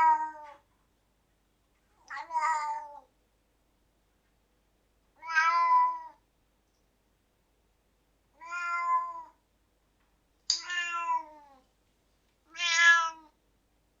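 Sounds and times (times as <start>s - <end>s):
cat meowing: 2.0s - 3.1s, 5.2s - 6.2s, 8.4s - 9.4s, 10.5s - 11.6s, 12.5s - 13.4s.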